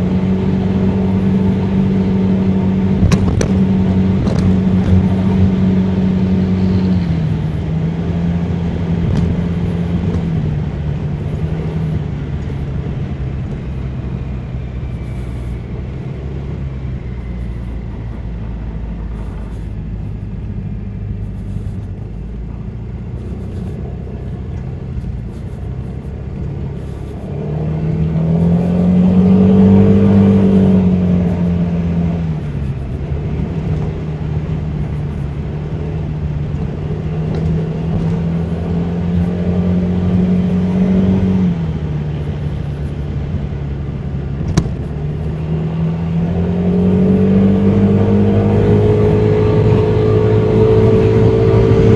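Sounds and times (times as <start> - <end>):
road and wind noise: 0.0 - 51.9
scooter engine running: 1.0 - 27.8.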